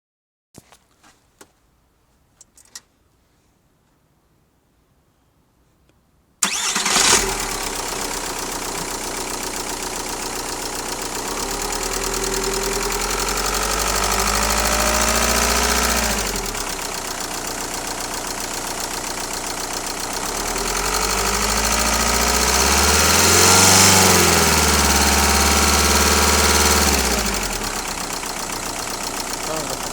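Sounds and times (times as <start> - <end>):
diesel engine starting and revving: 6.4 - 29.9.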